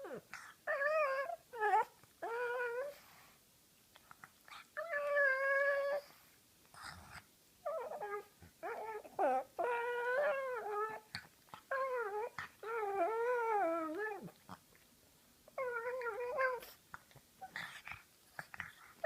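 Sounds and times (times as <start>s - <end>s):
dog whining: 0.0s - 3.0s, 4.6s - 6.2s, 7.6s - 11.1s, 11.7s - 14.4s, 15.5s - 16.8s.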